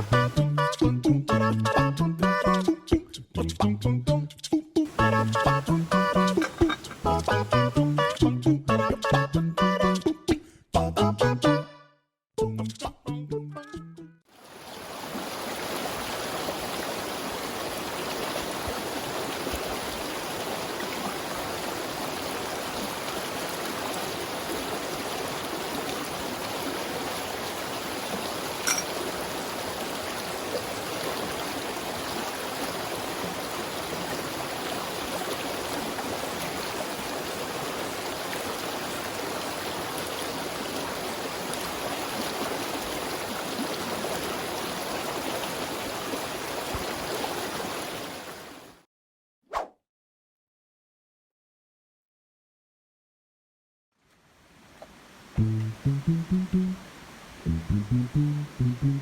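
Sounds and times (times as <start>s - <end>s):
water rushing over rocks: 4.9s - 7.6s, 14.4s - 48.6s.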